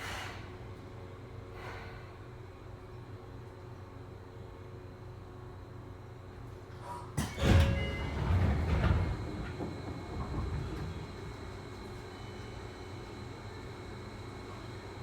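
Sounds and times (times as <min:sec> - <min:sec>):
low steady train hum: 0:00.0 - 0:15.0
sliding door thud and rattle: 0:07.2 - 0:11.6.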